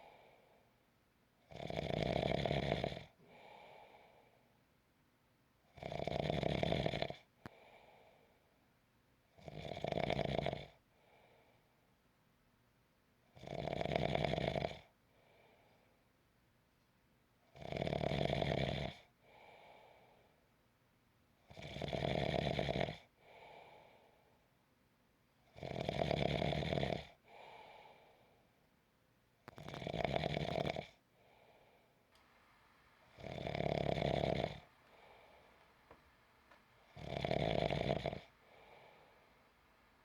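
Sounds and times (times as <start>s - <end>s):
faint breathing: 0.0s - 0.8s, 3.1s - 4.6s, 7.4s - 8.6s, 10.9s - 11.8s, 15.1s - 16.0s, 19.2s - 20.4s, 23.2s - 24.4s, 27.2s - 28.7s, 31.1s - 40.0s
person snoring: 1.5s - 3.2s, 5.8s - 7.2s, 29.6s - 31.0s, 33.1s - 39.8s.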